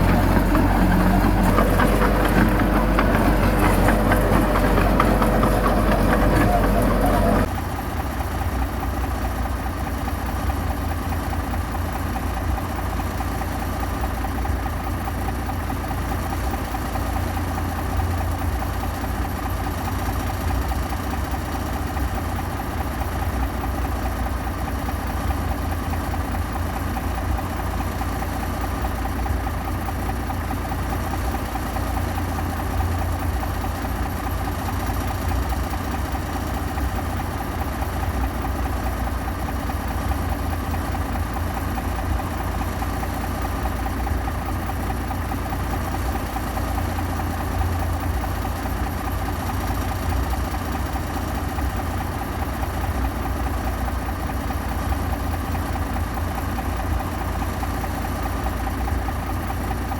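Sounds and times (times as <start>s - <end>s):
heavy diesel engine rumbling: 0.0s - 8.8s.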